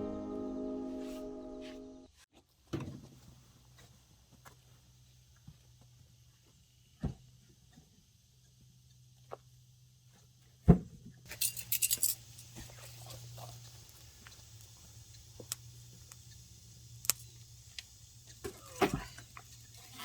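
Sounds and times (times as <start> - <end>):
light metallic clinks: 11.3 - 17.4.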